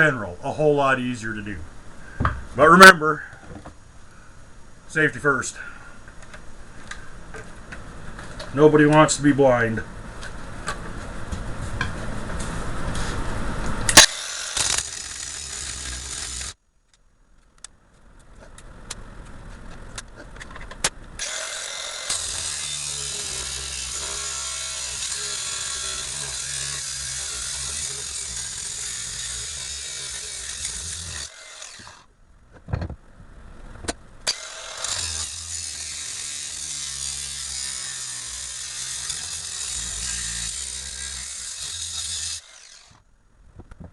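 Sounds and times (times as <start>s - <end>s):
motor hum: 12.4s - 16.6s, 21.0s - 32.1s, 34.2s - 43.0s
angle grinder cutting metal: 13.9s - 16.6s, 21.2s - 32.1s, 34.3s - 43.0s.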